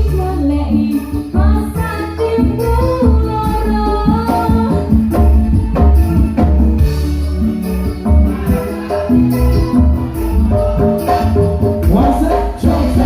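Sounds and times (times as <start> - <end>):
bass: 0.0 - 13.0
electronic keyboard melody: 0.0 - 13.0.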